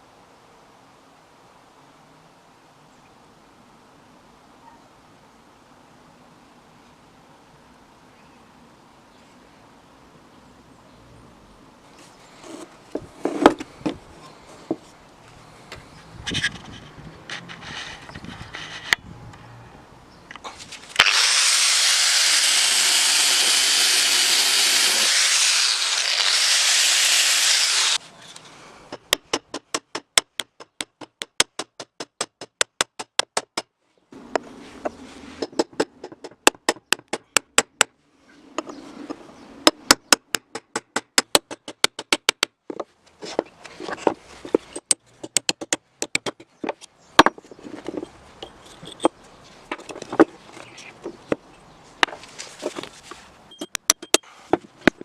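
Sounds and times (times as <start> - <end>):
loud steady hiss: 20.8 - 28.9.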